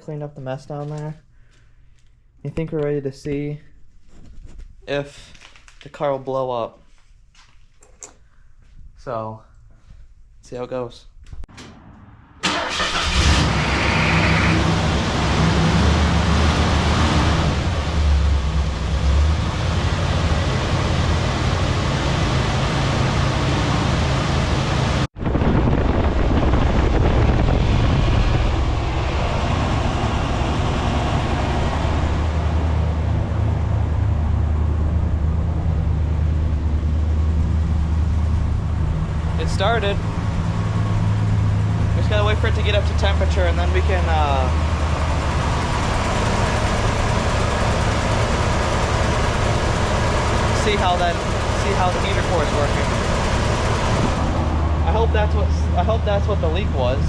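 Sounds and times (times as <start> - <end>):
car engine starting and idling: 11.6 - 25.1, 27.3 - 57.0.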